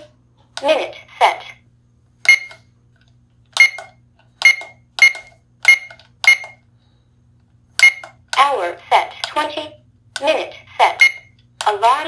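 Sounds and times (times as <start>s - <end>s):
short electronic beeps: 2.3s - 2.6s, 4.4s - 6.6s, 11.0s - 11.3s.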